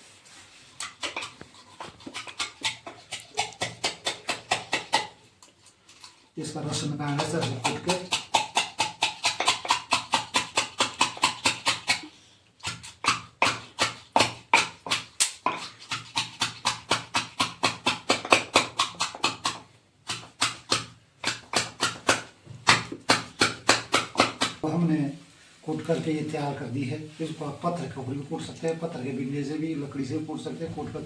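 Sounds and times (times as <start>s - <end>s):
wooden pestle pounding in mortar: 2.0s - 5.2s, 7.0s - 24.6s.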